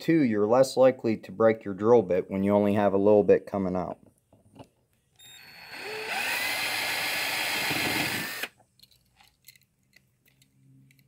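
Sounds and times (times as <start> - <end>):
power drill whining: 5.2 - 8.6.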